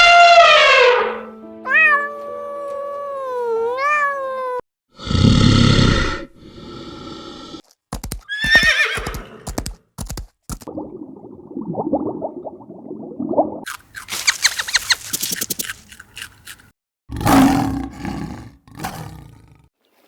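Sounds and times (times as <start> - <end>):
loud animal call falling in pitch: 0.0 - 1.3.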